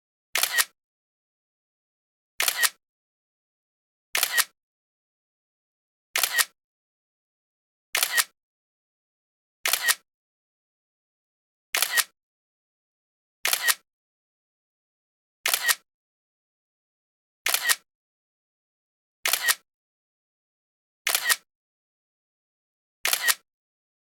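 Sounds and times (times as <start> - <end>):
camera shutter clicks: 0.4 - 0.7, 2.4 - 2.8, 4.2 - 4.5, 6.2 - 6.6, 8.0 - 8.3, 9.6 - 10.0, 11.8 - 12.1, 13.4 - 13.8, 15.5 - 15.8, 17.5 - 17.8, 19.3 - 19.6, 21.1 - 21.4, 23.0 - 23.4.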